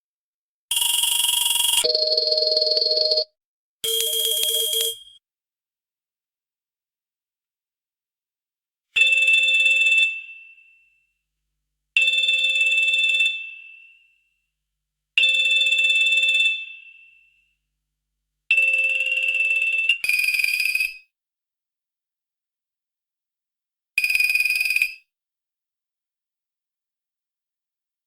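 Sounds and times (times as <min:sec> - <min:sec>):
telephone bell ringing: 0:00.8 - 0:05.2.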